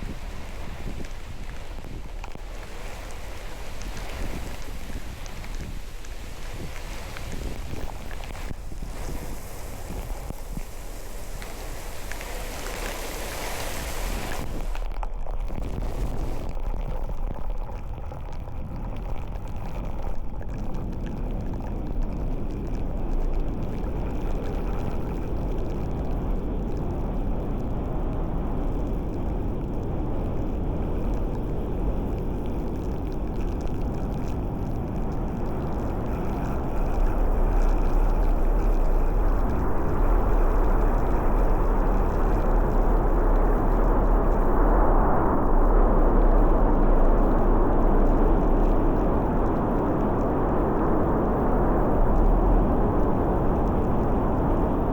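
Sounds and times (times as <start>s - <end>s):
wind and road noise: 0.0s - 54.9s.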